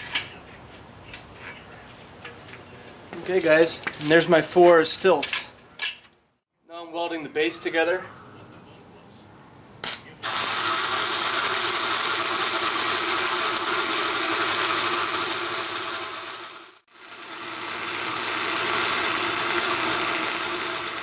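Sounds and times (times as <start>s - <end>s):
arc welder crackling: 9.8s - 21.0s.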